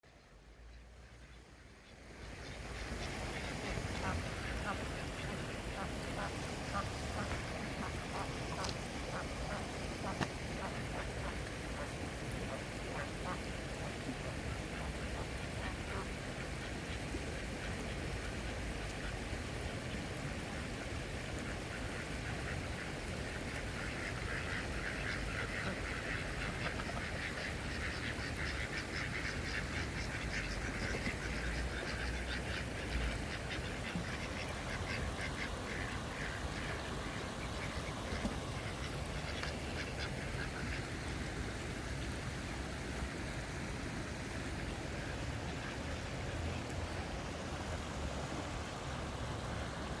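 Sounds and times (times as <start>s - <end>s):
steady background hiss: 0.1s - 50.0s
ducks quacking: 2.3s - 13.5s, 23.8s - 40.9s.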